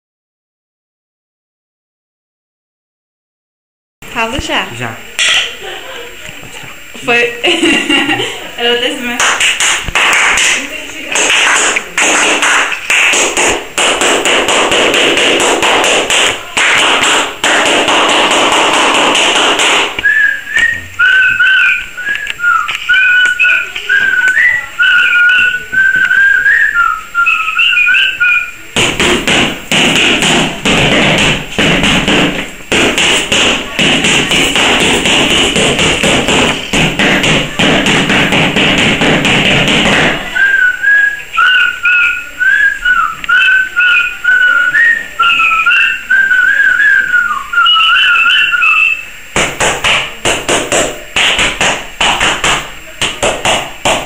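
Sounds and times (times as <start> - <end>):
hands clapping and tapping: 9.2 - 20.7, 21.3 - 24.3, 28.8 - 40.3, 49.4 - 54.0
person whistling a tune: 20.0 - 28.6, 40.2 - 49.1.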